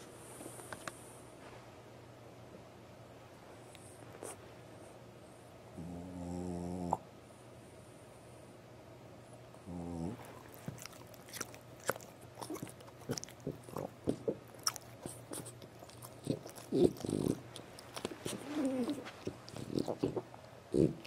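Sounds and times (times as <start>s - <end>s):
dog snoring: 5.8s - 7.0s, 9.6s - 10.4s, 12.4s - 21.0s
dog mouth clicking noises: 10.6s - 21.0s.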